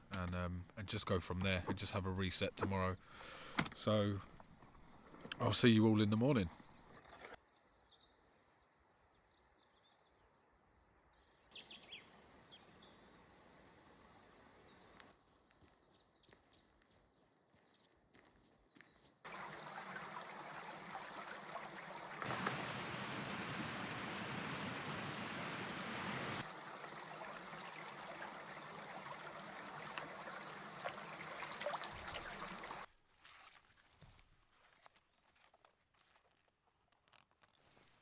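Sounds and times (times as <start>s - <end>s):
running water rushing: 19.3s - 32.9s.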